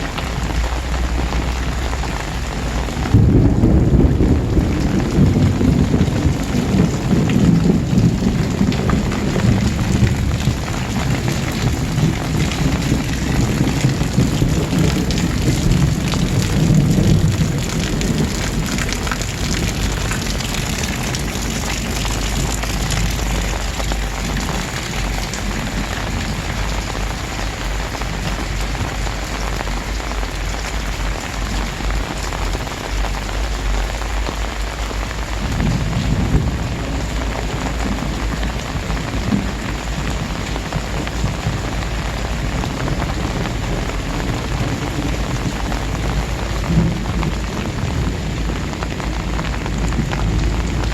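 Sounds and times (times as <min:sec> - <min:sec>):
heavy rain pouring: 0:00.0 - 0:50.9
low rumble: 0:00.0 - 0:50.9.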